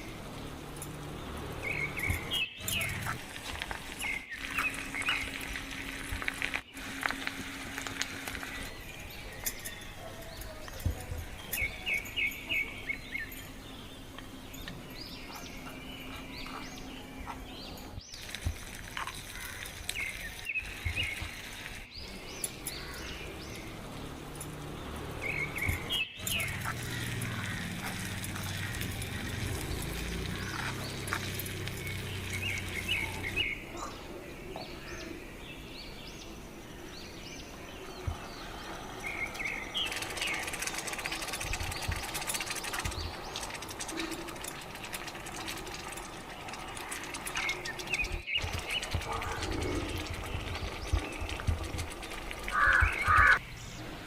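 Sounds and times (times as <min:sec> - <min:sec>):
outdoor background noise: 0:00.0 - 0:54.0
small birds chirping: 0:00.0 - 0:54.0.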